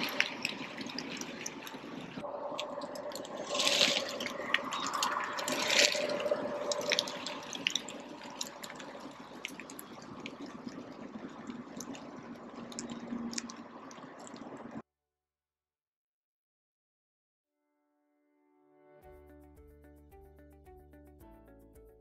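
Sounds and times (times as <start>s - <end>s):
running splashing water: 0.0s - 14.8s
water drips: 0.0s - 14.8s.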